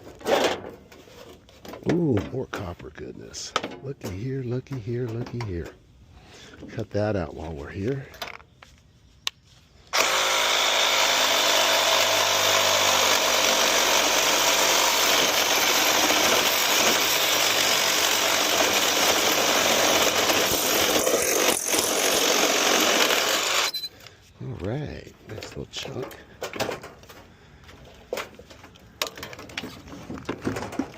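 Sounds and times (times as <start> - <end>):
power tool cutting metal: 10.0 - 23.8.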